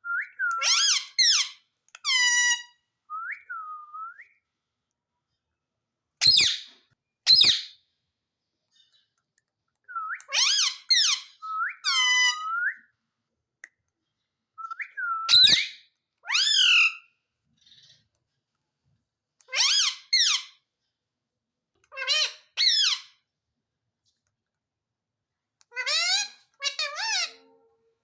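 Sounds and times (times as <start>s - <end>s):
parrot squawking: 0.6s - 2.7s, 7.3s - 7.8s, 10.3s - 12.6s, 15.3s - 17.1s, 19.5s - 20.6s, 21.9s - 23.2s, 25.7s - 27.5s
parrot whistling: 14.6s - 17.0s.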